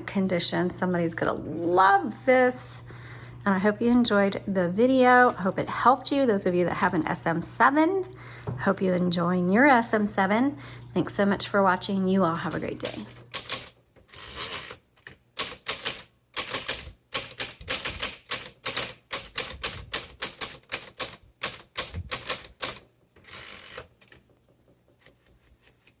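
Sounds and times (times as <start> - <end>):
typewriter key strikes: 12.4 - 14.8, 15.4 - 24.2.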